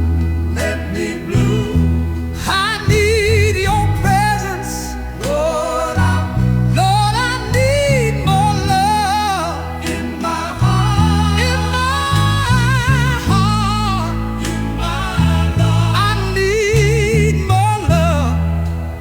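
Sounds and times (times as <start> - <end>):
instrumental backing with bass: 0.0 - 19.0
solo voice singing with vibrato: 0.6 - 18.4.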